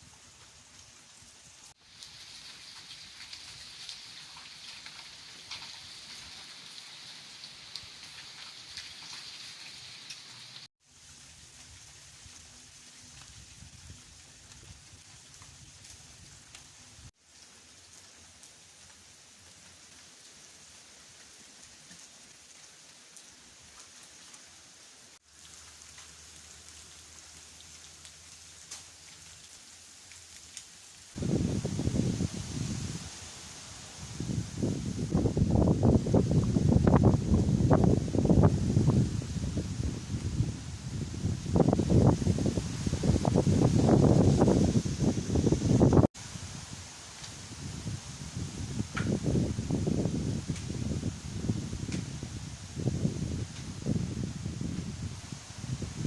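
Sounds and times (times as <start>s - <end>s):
steady rainfall: 0.0s - 56.0s
raindrops ticking: 1.8s - 10.7s, 25.3s - 31.0s.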